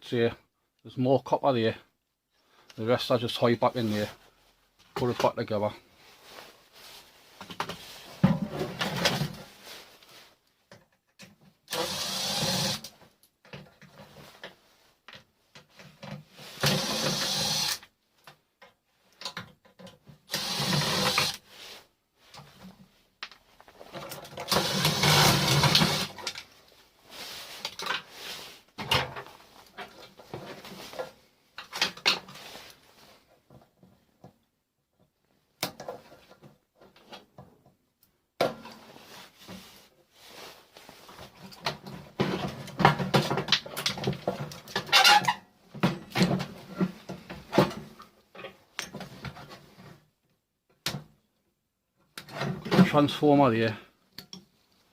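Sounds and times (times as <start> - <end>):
handheld power tool running: 11.7 - 12.8, 16.6 - 17.8, 20.3 - 21.4, 24.5 - 26.1.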